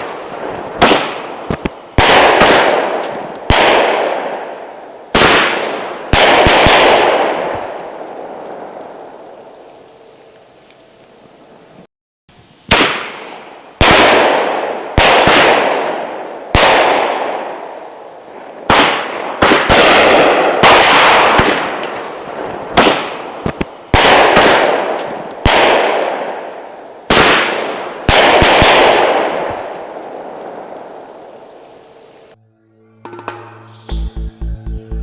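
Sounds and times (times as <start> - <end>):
firework bangs: 0.0 - 9.6, 12.6 - 32.4
firework strobe hiss: 21.7 - 22.8.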